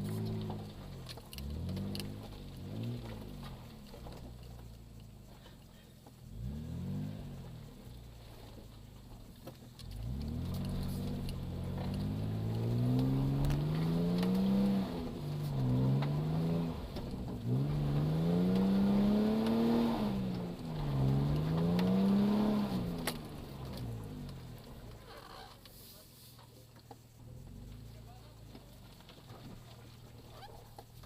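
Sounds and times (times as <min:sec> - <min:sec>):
engine revving hard: 0:06.4 - 0:07.6, 0:09.9 - 0:24.0.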